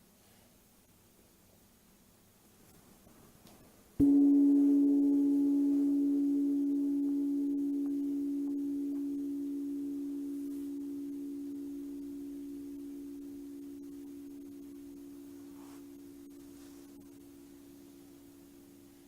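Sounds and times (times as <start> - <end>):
low ringing tone: 4.0 - 19.0.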